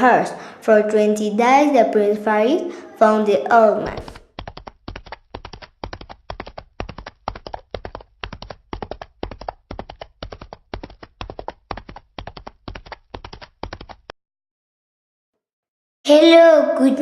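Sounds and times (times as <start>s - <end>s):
horse hooves clip-clopping: 3.8s - 14.0s.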